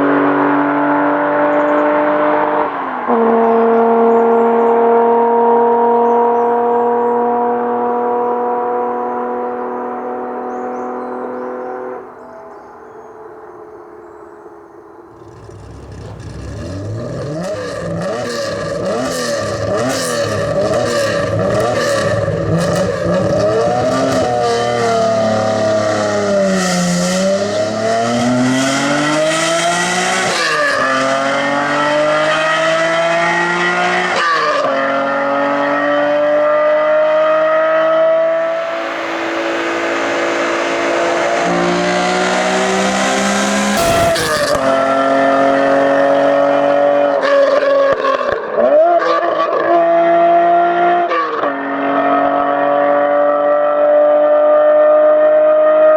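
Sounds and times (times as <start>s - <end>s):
car engine accelerating: 0.0s - 13.0s, 15.0s - 55.9s.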